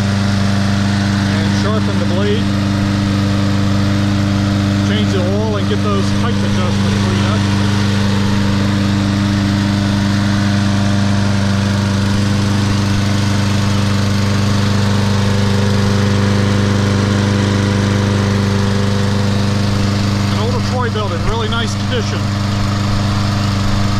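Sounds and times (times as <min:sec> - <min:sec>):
lawn mower engine running: 0:00.0 - 0:23.9.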